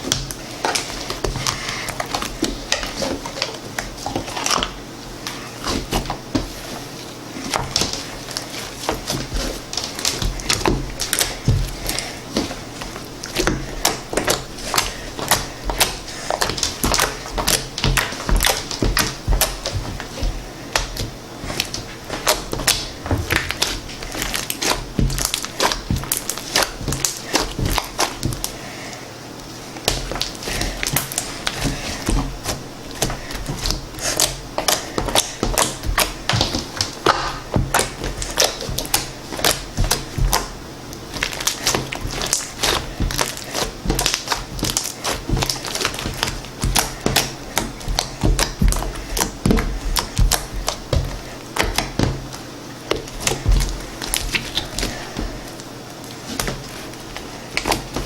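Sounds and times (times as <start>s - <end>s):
slime clicking and popping: 32.9s - 52.2s.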